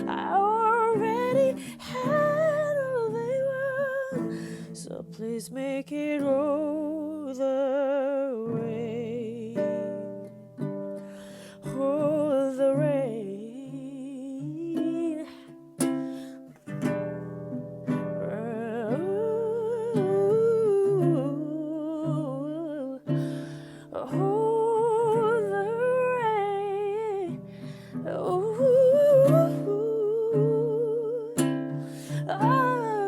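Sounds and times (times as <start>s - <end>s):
plucked string chords: 0.0s - 33.0s
person humming a slow melody: 28.2s - 33.0s.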